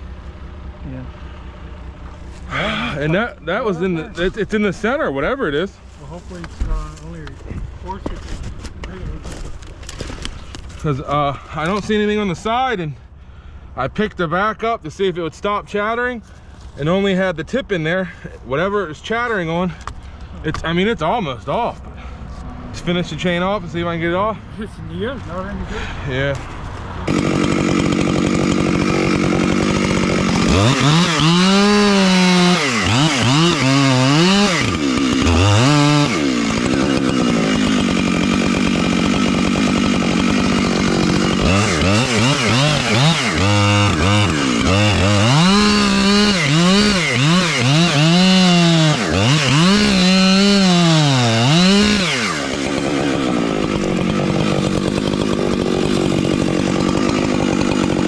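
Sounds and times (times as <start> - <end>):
chainsaw cutting wood: 1.9 - 5.0, 6.4 - 12.6, 26.4 - 58.0.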